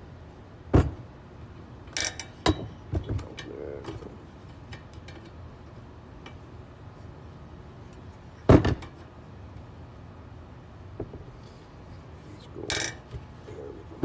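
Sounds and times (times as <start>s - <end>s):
wrench clanking on wheel spokes: 2.0s - 2.7s, 12.7s - 13.2s.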